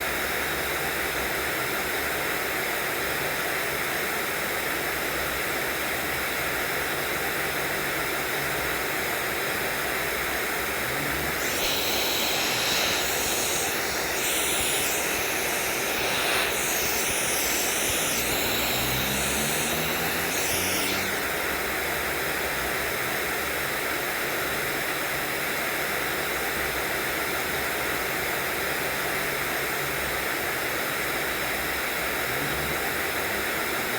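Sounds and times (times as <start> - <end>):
bright sound: 11.4 - 21.5
low hum rising in pitch: 11.4 - 21.6.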